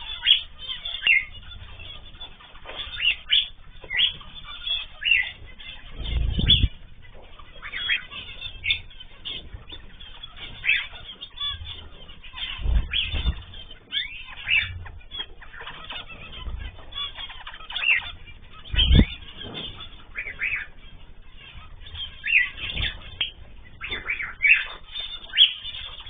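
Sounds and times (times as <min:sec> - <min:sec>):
cage birds chirping: 0:00.0 - 0:26.0
low thumps: 0:18.6 - 0:20.0.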